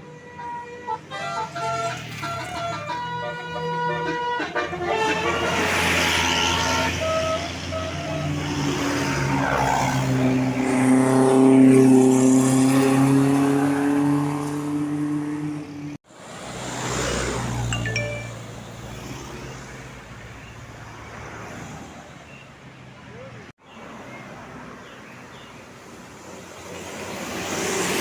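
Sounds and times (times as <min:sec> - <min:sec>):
musical bus horn: 0:00.0 - 0:08.5
bus engine: 0:00.6 - 0:17.7.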